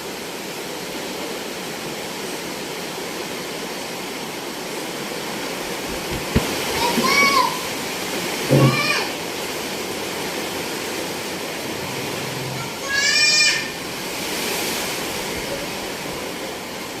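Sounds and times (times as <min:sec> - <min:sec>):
heavy rain: 0:00.0 - 0:17.0.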